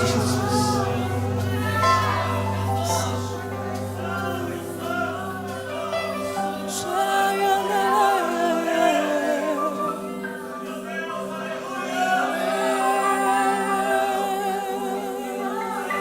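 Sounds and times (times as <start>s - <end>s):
sustained chords: 0.0s - 16.0s
voices singing wordless melody: 0.0s - 16.0s.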